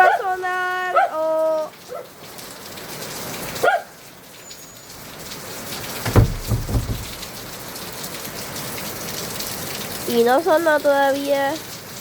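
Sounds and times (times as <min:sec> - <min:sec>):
heavy rain falling: 0:00.0 - 0:12.0
low thumps: 0:06.0 - 0:07.5.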